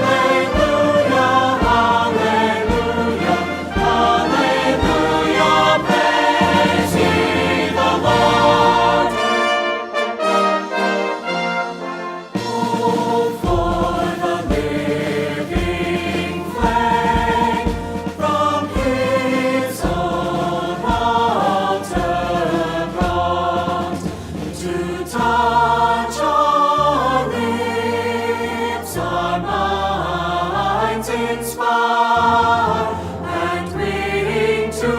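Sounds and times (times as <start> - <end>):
steady bass line: 0.0 - 9.2, 13.4 - 30.7
choir singing a hymn: 0.0 - 34.9
instrumental accompaniment: 0.0 - 34.9.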